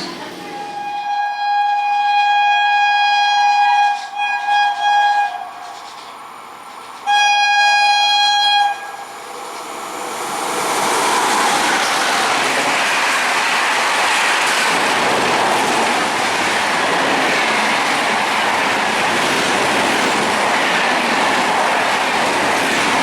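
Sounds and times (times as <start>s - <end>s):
train air horn blasts: 0.6s - 5.9s, 7.0s - 9.2s
train rumble: 3.3s - 23.0s.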